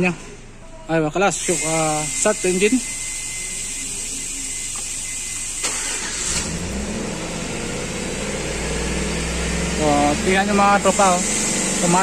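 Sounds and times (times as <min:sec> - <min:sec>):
car engine starting and idling: 0:05.4 - 0:12.0.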